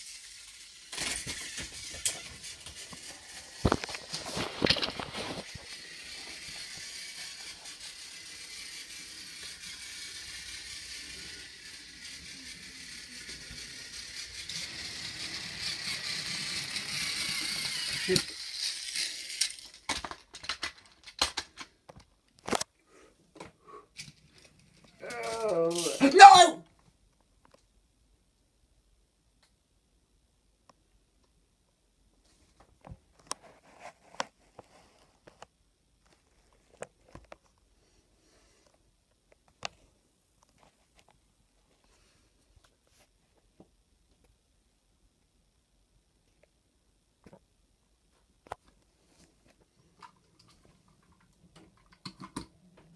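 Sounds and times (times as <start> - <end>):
toy train whirring and rattling: 0.0 - 21.8, 23.9 - 26.5
small objects clicking and knocking: 0.0 - 22.7, 49.8 - 52.9.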